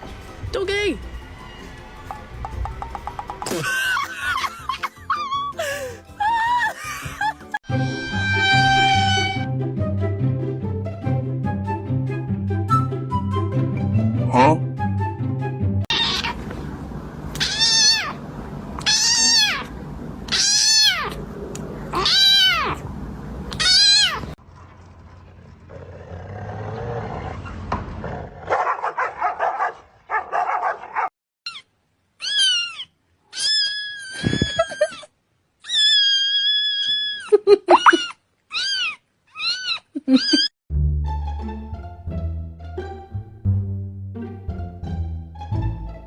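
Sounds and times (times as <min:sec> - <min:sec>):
cat meowing: 0:15.9 - 0:16.4, 0:17.4 - 0:18.2, 0:18.8 - 0:19.7, 0:20.3 - 0:21.2, 0:22.0 - 0:22.8, 0:23.5 - 0:24.3, 0:37.9 - 0:40.5.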